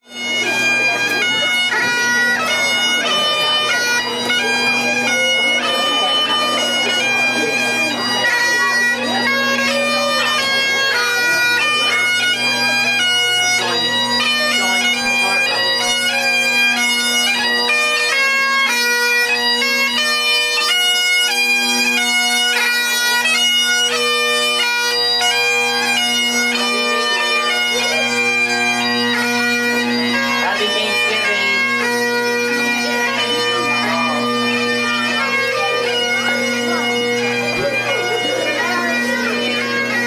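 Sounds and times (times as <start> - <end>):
bagpipes playing a marching tune: 0.0 - 40.0.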